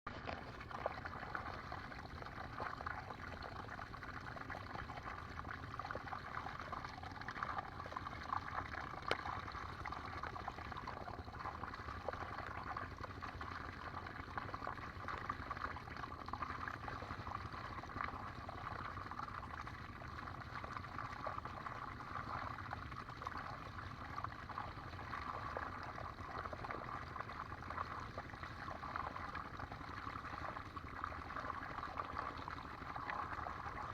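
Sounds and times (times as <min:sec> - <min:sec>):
water flowing and trickling: 0:00.1 - 0:33.9
faint ticks: 0:09.0 - 0:09.4.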